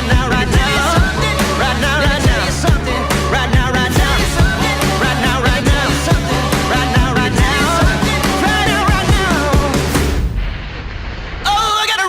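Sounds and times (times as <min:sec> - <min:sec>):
person singing: 0:00.0 - 0:10.1
kick drum beat: 0:03.6 - 0:04.8, 0:05.5 - 0:06.4, 0:07.0 - 0:10.0.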